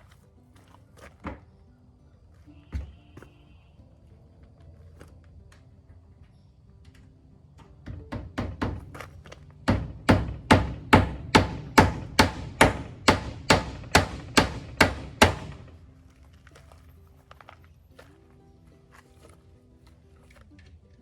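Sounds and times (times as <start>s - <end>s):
hammer driving nail into wood: 9.6s - 15.7s.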